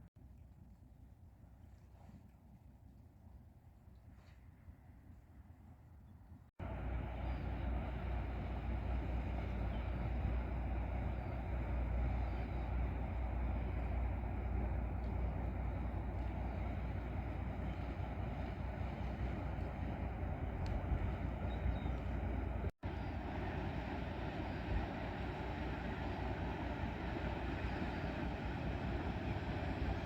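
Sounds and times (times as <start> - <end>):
ship engine droning: 6.6 - 30.0.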